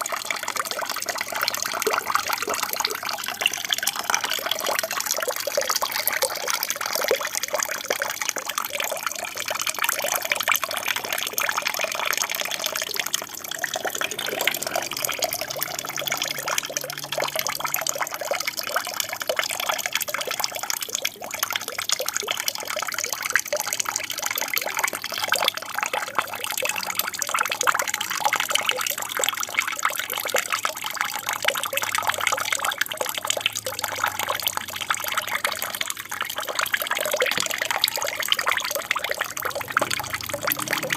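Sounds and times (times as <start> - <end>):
water splashing and trickling: 0.0 - 40.9.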